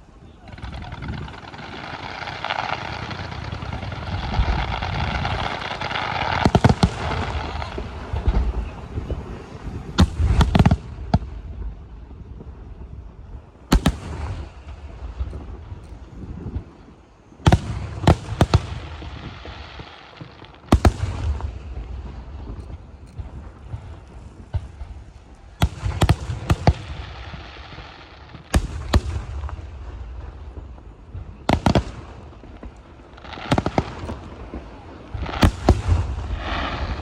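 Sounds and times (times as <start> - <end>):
firework shells booming: 13.7 - 16.7, 17.4 - 37.0.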